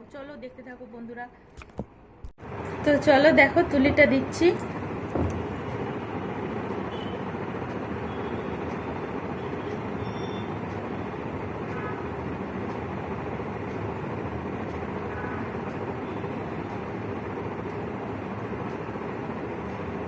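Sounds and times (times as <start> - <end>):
steady hiss and rumble: 2.1 - 6.8.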